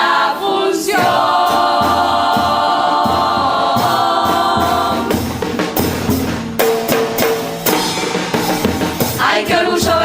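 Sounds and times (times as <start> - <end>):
chorus singing held chord: 0.0 - 5.6, 9.2 - 10.0
drum beats: 0.0 - 10.0.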